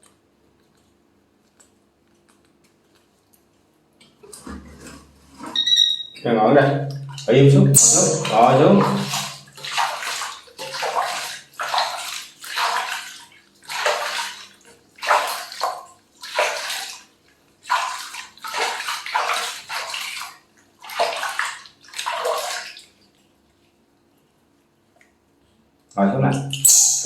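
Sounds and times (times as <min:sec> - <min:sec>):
water gushing and splashing: 0:07.8 - 0:14.4.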